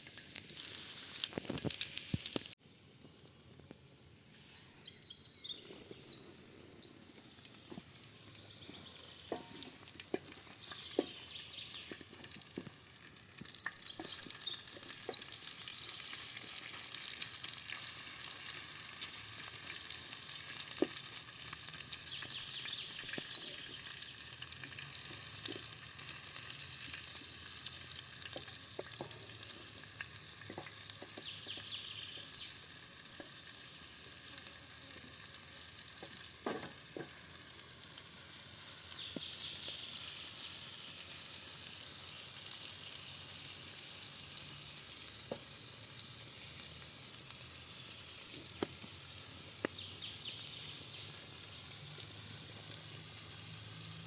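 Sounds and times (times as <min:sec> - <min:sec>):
vegetables sizzling in pan: 0:00.0 - 0:02.6, 0:05.4 - 0:54.0
songbird singing: 0:04.2 - 0:12.1, 0:13.3 - 0:16.2, 0:21.4 - 0:24.3, 0:31.0 - 0:33.4, 0:38.8 - 0:40.6, 0:46.4 - 0:48.8, 0:49.6 - 0:51.4.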